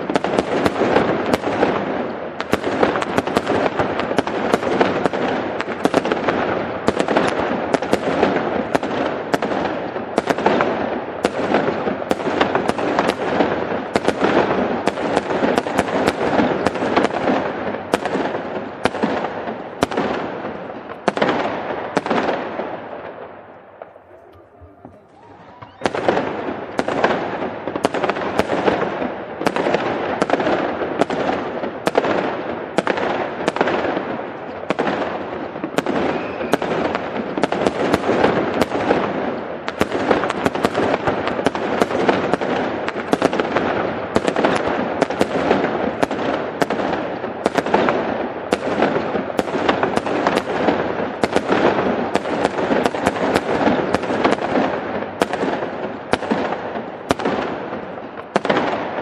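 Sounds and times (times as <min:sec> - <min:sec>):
dense firework crackle: 0:00.0 - 0:59.0.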